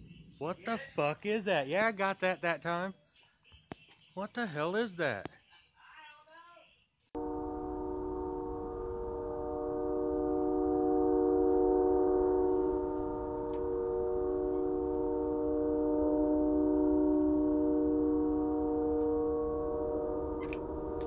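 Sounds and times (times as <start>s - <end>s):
loud drone of held tones: 7.2s - 21.0s.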